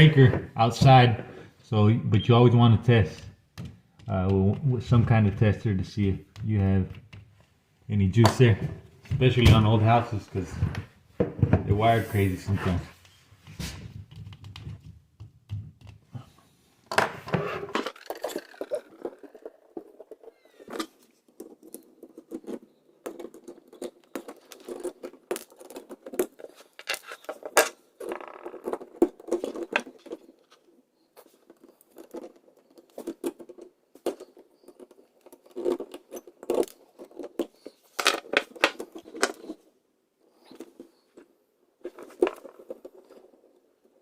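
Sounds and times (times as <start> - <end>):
hand tools clicking and scraping: 17.2 - 27.8.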